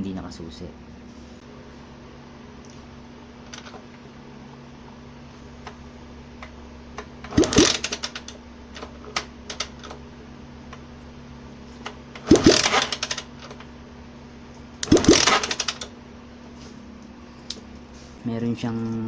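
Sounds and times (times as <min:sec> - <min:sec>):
motorcycle kickstart thud: 0:07.2 - 0:10.0, 0:11.9 - 0:13.6, 0:14.8 - 0:15.9.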